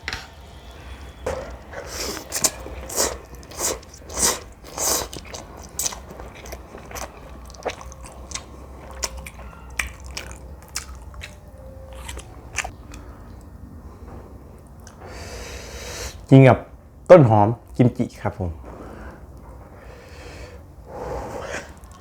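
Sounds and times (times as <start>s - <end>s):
wet noodle slurping: 1.4s - 12.7s
chewing with smacking: 1.4s - 13.4s.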